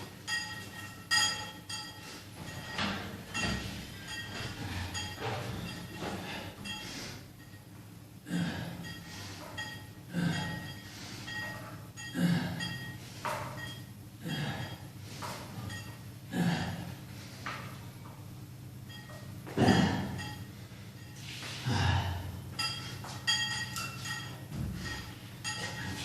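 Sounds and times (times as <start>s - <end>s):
person breathing hard: 21.2s - 22.5s.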